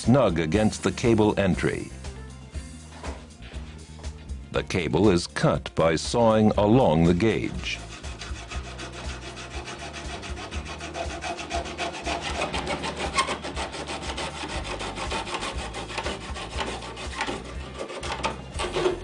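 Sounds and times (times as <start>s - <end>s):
hand saw cutting metal cable: 7.6s - 19.0s.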